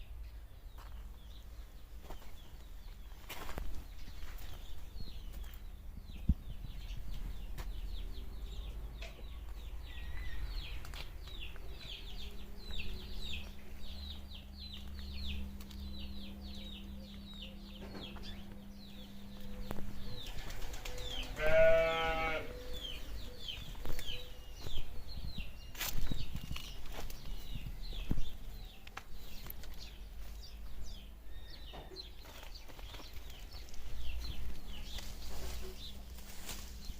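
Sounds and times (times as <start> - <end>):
loud bleat: 21.3 - 22.5.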